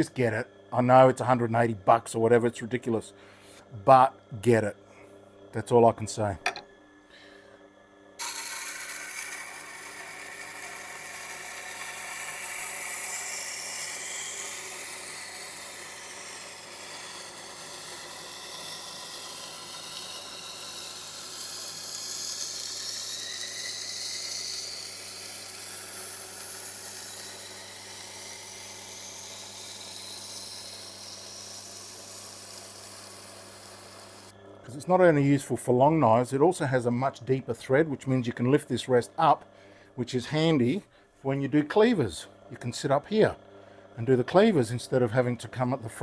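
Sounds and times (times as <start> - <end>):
knife blade grinding on stone: 8.2 - 34.3.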